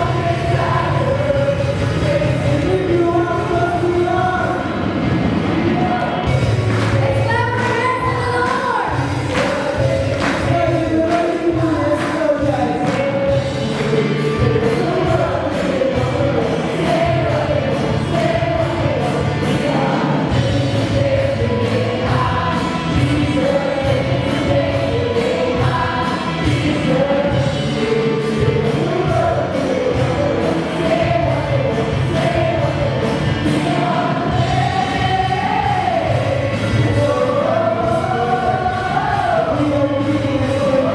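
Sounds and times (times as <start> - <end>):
choir singing worship song: 0.0 - 40.9
instrumental accompaniment with beat: 0.0 - 40.9.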